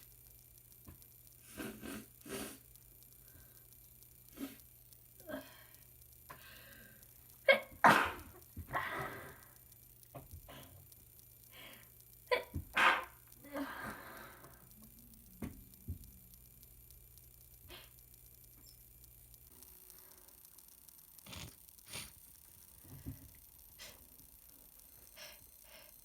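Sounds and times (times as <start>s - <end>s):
sniffs and breaths: 1.4s - 2.7s, 21.2s - 22.2s
person sneezing: 7.5s - 8.2s.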